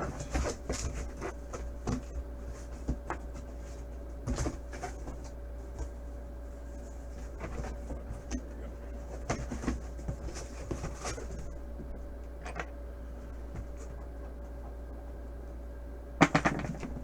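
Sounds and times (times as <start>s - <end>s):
hands handling cardboard box: 0.0s - 12.0s
low electrical hum: 0.0s - 17.0s.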